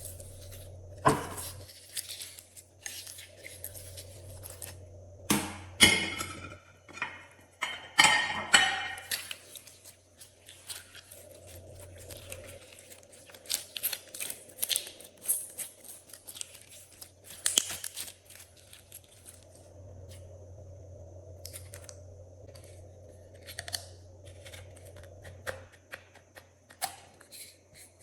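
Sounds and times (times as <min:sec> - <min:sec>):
sticky slime clicks and crackles: 0:12.4 - 0:19.3.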